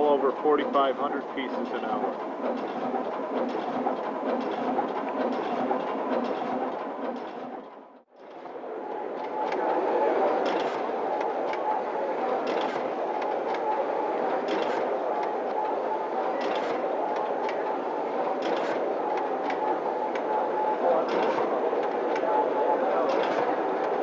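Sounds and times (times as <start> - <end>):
machine humming and whirring: 0.0 - 24.0
machine sharp clack: 0.5 - 7.7.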